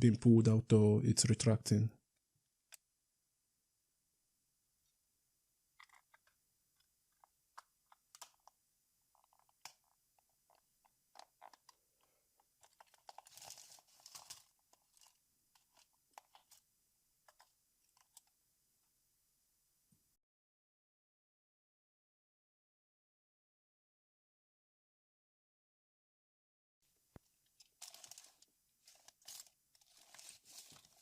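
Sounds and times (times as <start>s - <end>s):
crackly clicking and scraping: 5.8s - 16.6s, 17.2s - 18.4s, 27.2s - 31.0s
plastic case clicking and rattling: 9.2s - 11.8s, 12.6s - 16.6s.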